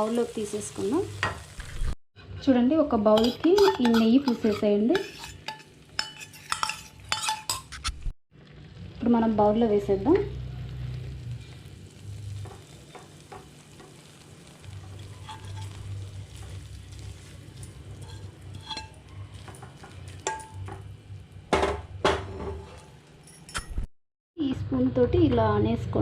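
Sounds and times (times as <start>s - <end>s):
spoon scraping a pan: 3.1s - 8.1s, 11.3s - 20.9s, 22.2s - 23.7s
spoon knocking: 3.2s - 7.7s.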